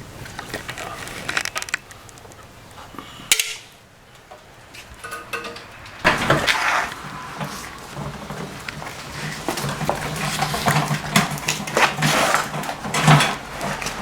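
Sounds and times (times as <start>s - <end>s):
sharp metallic knock: 5.1s - 8.0s.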